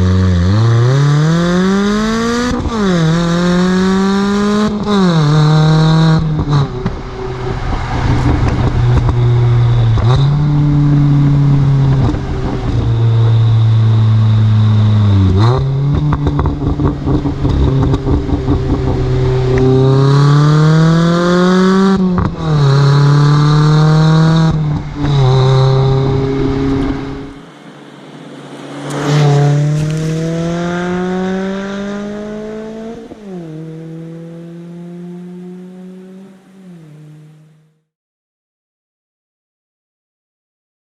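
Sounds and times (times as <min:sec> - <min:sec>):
car engine revving through gears: 0:00.0 - 0:37.8
exhaust crackling pops: 0:07.7 - 0:10.4.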